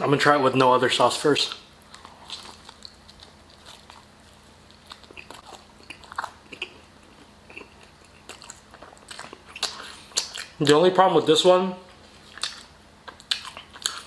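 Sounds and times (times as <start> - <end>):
biting and chewing food: 1.4 - 10.7, 12.0 - 14.0.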